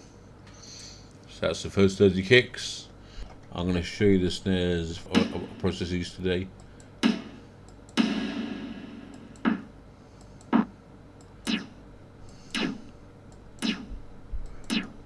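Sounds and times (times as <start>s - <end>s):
snare drum hits: 7.0s - 7.4s, 8.0s - 8.7s.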